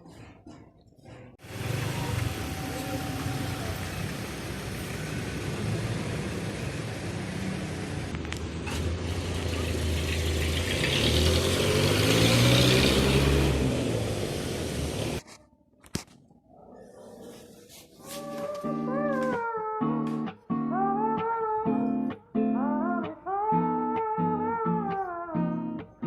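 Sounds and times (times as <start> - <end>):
street traffic: 0.1 - 15.2
vehicle engine accelerating: 1.4 - 15.2.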